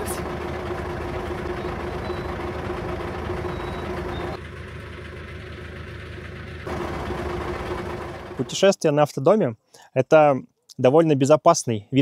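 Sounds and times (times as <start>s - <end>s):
bus engine running: 0.0s - 8.8s.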